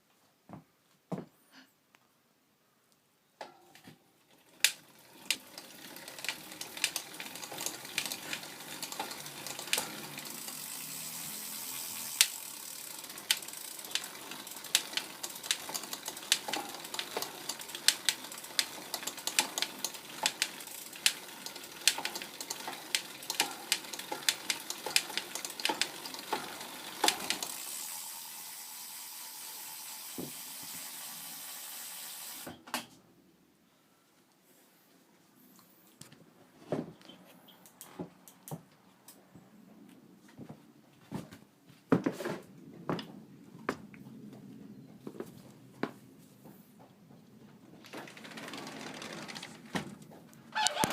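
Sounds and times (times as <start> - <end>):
sharp bicycle clicks: 4.4 - 28.0, 47.8 - 49.7, 50.5 - 50.9
bicycle drivetrain hiss: 4.8 - 32.6.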